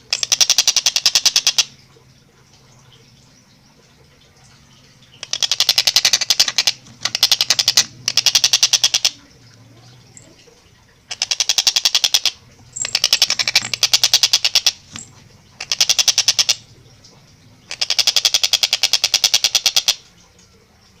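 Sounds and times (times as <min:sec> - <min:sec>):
faint low hum: 0:09.1 - 0:11.2.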